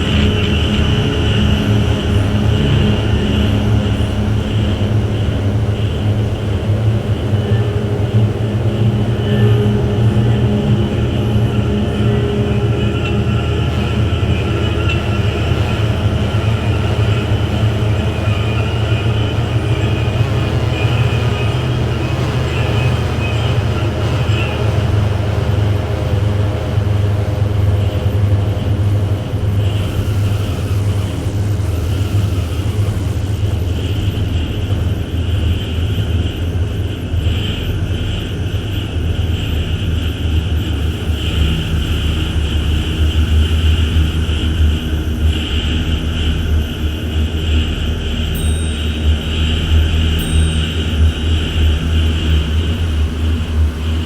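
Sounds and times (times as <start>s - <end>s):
hissing high band: 0.0s - 34.9s, 47.1s - 54.0s
low rumbling drone music: 0.0s - 54.0s
thin high whining tones: 0.0s - 54.0s.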